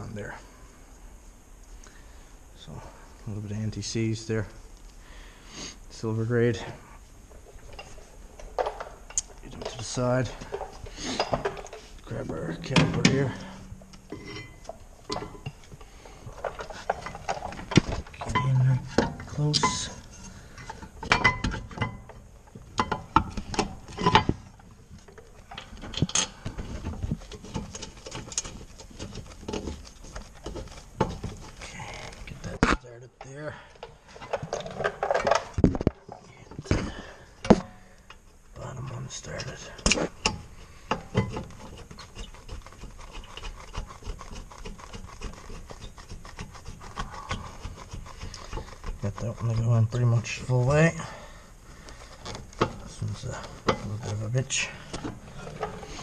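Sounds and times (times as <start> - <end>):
metallic clicks and knocks: 7.3 - 31.6
metal rubbing: 7.3 - 35.5, 37.6 - 51.0, 51.8 - 56.0.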